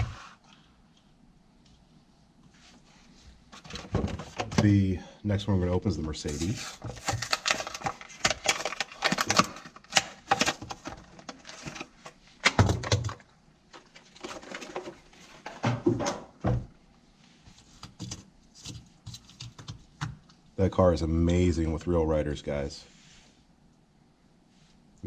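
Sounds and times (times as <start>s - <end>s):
packaging crackling and clicking: 6.9s - 15.0s.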